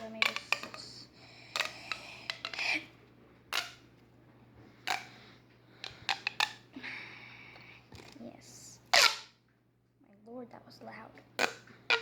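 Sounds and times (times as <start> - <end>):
pop tube toy clicking pops: 0.0 - 0.8, 1.5 - 2.8, 3.5 - 3.8, 4.9 - 5.1, 5.8 - 6.6.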